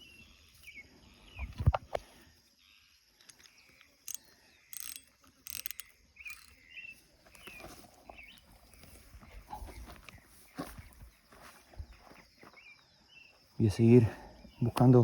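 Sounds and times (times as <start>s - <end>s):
small birds chirping: 0.0s - 15.0s
fishing reel ratcheting: 4.1s - 6.6s.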